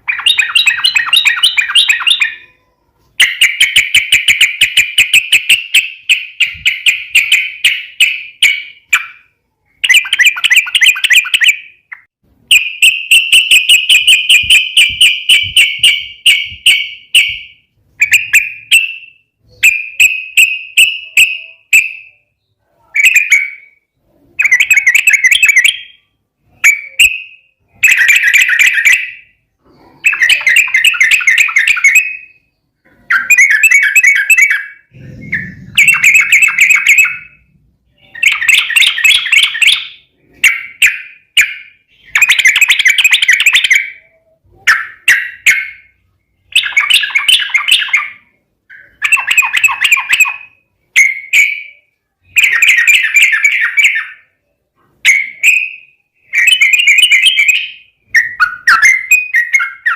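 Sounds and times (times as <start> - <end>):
bird singing bubbling notes: 29.8 - 40.3.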